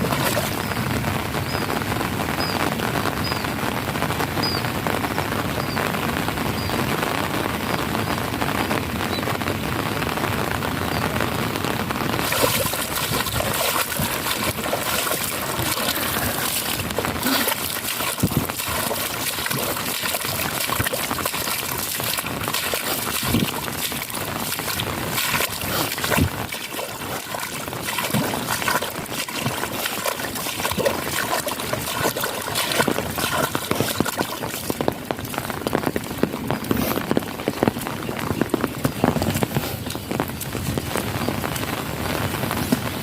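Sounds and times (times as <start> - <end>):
water pouring and trickling: 0.0 - 1.7, 12.0 - 43.0
heavy rain falling: 0.0 - 43.0.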